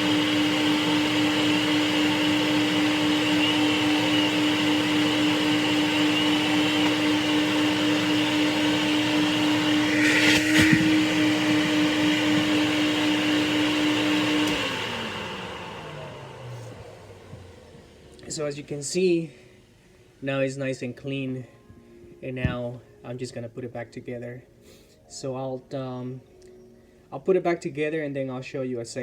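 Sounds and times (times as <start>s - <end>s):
vacuum motor running: 0.0s - 19.0s
scratchy chalk burst: 9.8s - 11.8s.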